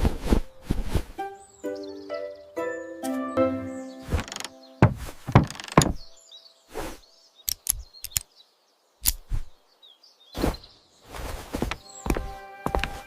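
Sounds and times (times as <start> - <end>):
faint bird chirps: 0.4 - 13.0
irregular knocks and thumps: 4.0 - 6.2.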